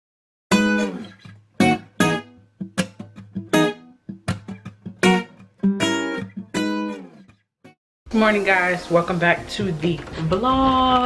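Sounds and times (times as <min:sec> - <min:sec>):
acoustic guitar chords: 0:00.5 - 0:07.4.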